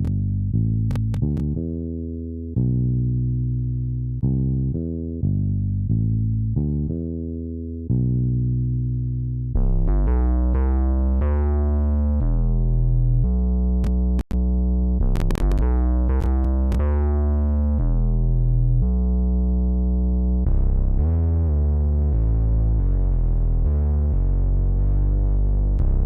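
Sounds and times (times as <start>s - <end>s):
synthesizer chords over bass: 0.0s - 26.0s
sharp clicks: 15.1s - 16.9s.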